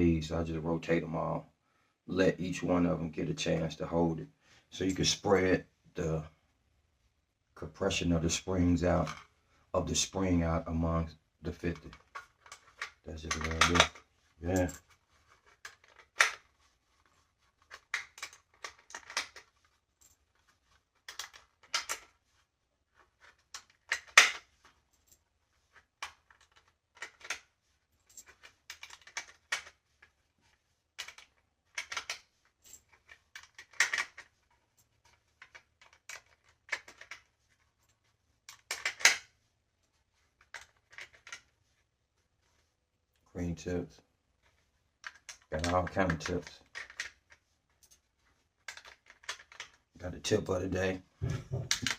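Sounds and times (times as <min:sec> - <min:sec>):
metallic clicks of magazines handled: 0:11.5 - 0:22.2, 0:23.0 - 0:30.1, 0:31.0 - 0:37.4, 0:38.4 - 0:39.4, 0:40.4 - 0:41.5, 0:45.0 - 0:50.0, 0:51.3 - 0:51.9.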